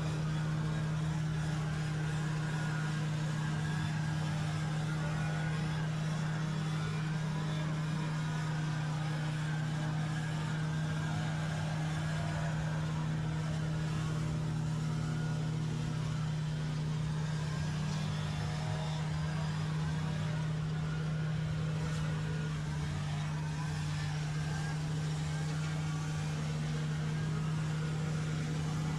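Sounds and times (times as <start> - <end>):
engine droning steadily: 0.0 - 28.9.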